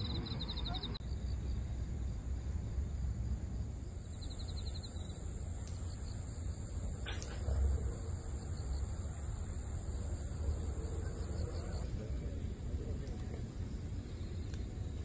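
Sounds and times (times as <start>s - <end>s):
crickets chirring: 0.0s - 15.0s
faint voices: 6.9s - 14.2s.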